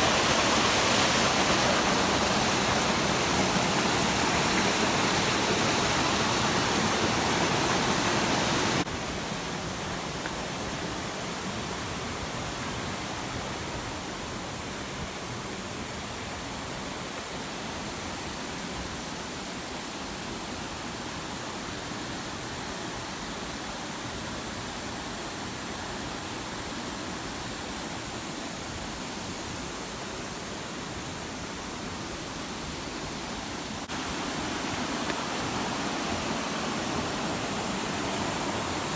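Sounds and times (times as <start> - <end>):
waterfall rushing: 0.0 - 14.4, 29.0 - 38.9.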